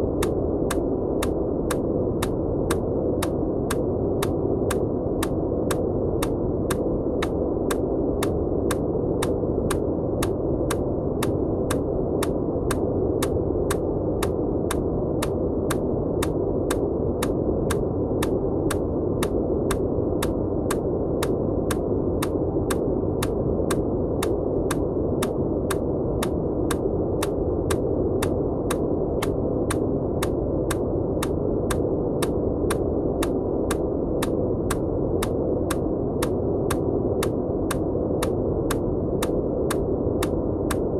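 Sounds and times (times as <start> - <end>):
dull white noise hiss: 0.0 - 40.9
regular short clicks: 23.7 - 40.8.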